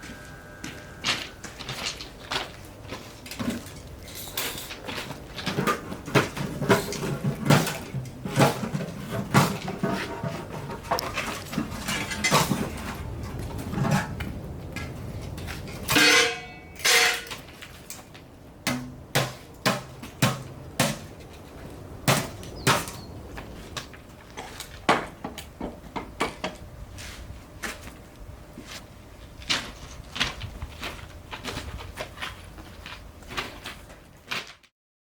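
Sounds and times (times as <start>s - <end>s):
ringing metal clank: 15.9s - 17.4s.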